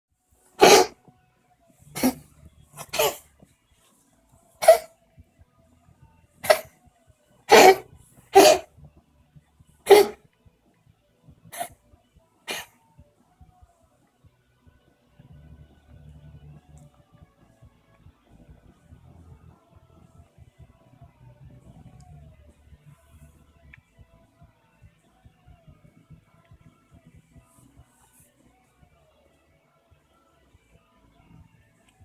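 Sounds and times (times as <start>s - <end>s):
cat coughing: 0.6s - 1.0s, 2.0s - 3.3s, 4.6s - 4.9s, 6.4s - 6.7s, 7.5s - 8.7s, 9.8s - 10.2s, 12.5s - 12.7s.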